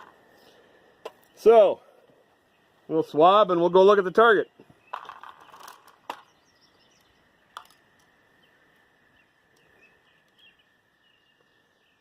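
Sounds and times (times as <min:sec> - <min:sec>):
faint bird chirps: 0:04.5 - 0:12.0.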